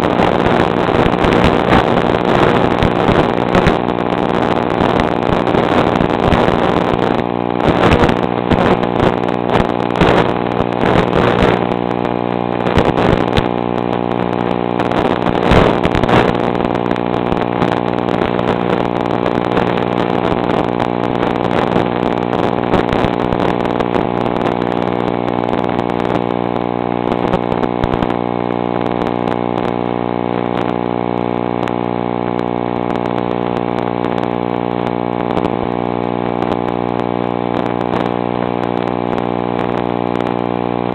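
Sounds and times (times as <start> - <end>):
motor running steadily: 0.0 - 21.1.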